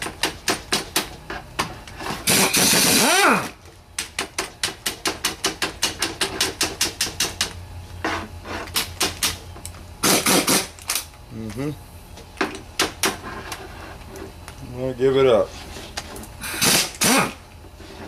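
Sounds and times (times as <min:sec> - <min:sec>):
air impact wrench bursts: 0:02.2 - 0:03.6, 0:10.0 - 0:10.8, 0:16.4 - 0:17.4.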